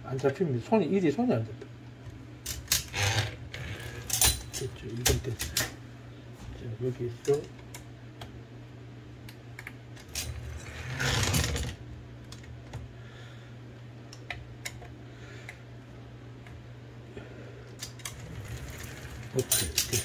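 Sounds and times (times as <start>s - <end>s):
steady low hum: 0.0s - 20.0s
typewriter rattling whirr: 10.0s - 11.8s, 17.8s - 20.0s
typewriter mechanism clicks: 17.8s - 20.0s.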